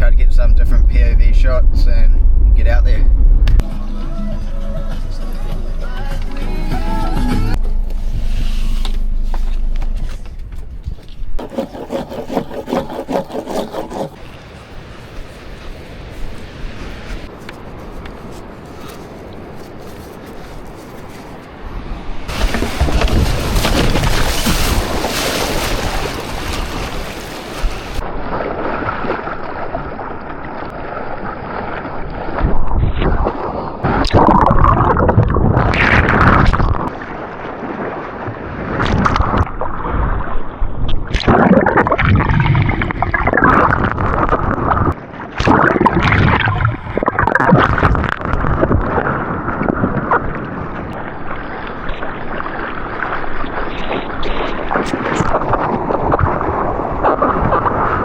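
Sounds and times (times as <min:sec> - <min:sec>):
wind buffeting microphone: 0:21.6 - 0:28.4
seawater sloshing and splashing: 0:22.3 - 0:58.0.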